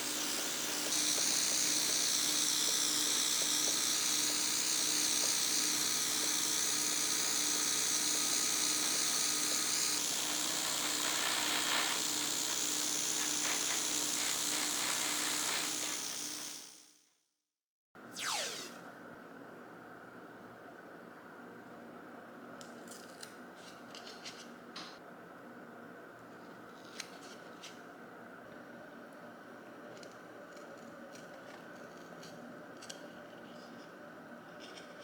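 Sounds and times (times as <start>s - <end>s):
high-speed power tool whine: 0.0s - 16.9s, 18.2s - 18.8s.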